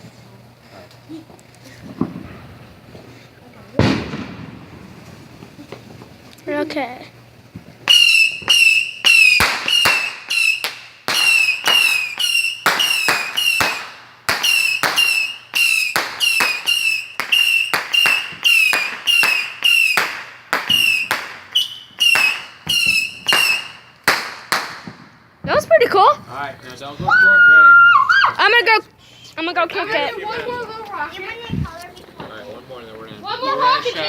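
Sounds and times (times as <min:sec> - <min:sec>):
firework cake whistling shots: 0:07.8 - 0:25.1.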